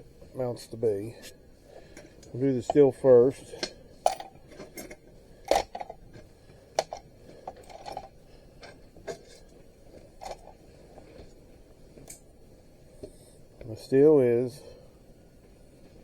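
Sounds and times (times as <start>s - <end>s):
small steel parts clinking: 4.0s - 6.0s, 6.8s - 9.5s.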